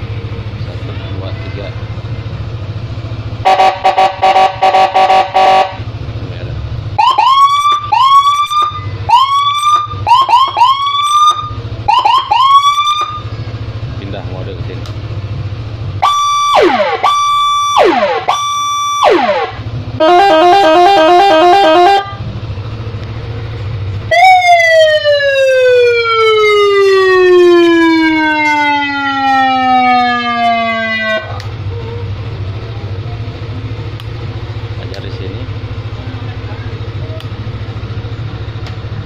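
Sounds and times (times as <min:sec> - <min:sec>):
electronic motorcycle siren: 0:03.4 - 0:05.9, 0:07.0 - 0:13.3, 0:16.0 - 0:22.3, 0:24.1 - 0:31.5.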